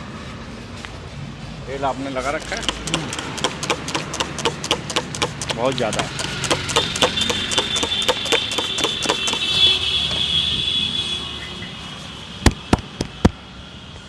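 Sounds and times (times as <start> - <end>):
hands tapping on scalp: 2.3 - 9.6.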